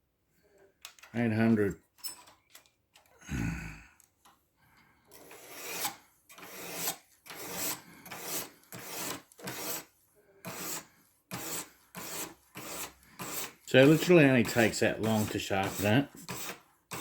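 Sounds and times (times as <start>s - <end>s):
sharpening stone rasping on blade: 5.2s - 17.0s.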